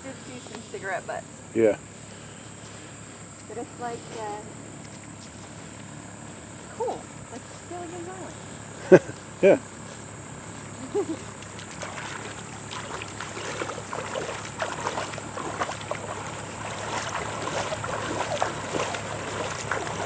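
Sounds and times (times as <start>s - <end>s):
high-pitched insect drone: 0.0s - 20.0s
water splashing around boat: 10.1s - 20.0s.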